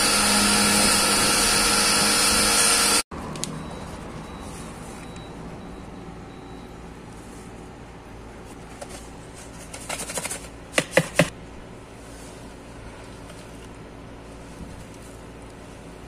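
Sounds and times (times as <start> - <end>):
low background hum: 3.2 - 16.0.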